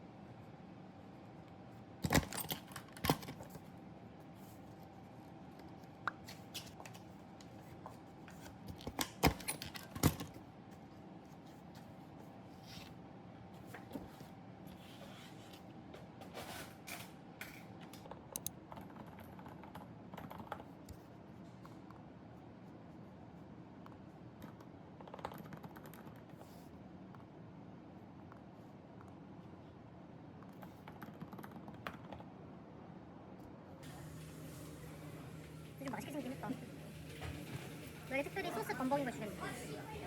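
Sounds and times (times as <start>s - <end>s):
faint room hum: 0.0s - 40.0s
typing on keyboard: 25.0s - 26.3s.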